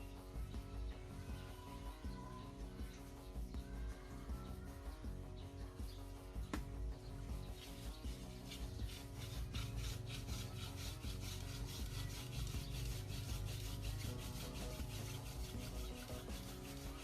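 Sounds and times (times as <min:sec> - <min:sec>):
wooden spindle rasping on board: 0:07.5 - 0:17.0.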